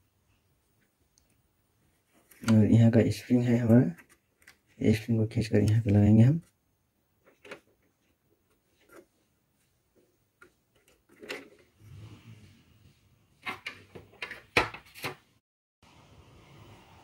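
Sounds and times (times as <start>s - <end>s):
clicks and knocks of printer parts: 13.4s - 15.2s.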